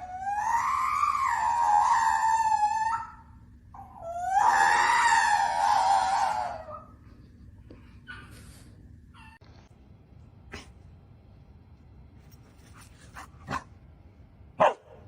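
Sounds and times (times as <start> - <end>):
dog barking: 14.6 - 15.0.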